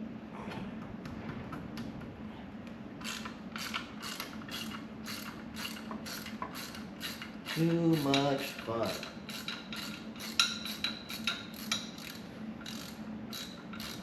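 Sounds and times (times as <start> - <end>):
ratchet wrench clicking: 3.0 - 14.0.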